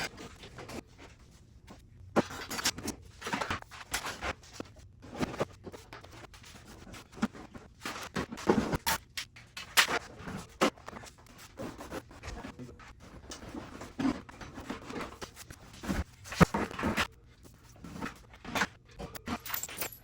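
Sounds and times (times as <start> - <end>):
objects knocking and clinking: 19.2 - 20.0.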